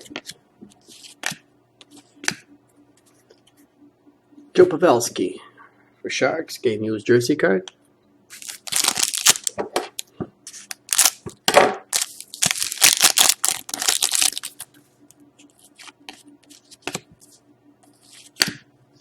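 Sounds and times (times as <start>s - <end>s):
plastic wrappers crinkling and tearing: 8.3s - 10.0s, 10.7s - 11.2s, 11.9s - 14.7s
cards being handled: 15.4s - 17.1s.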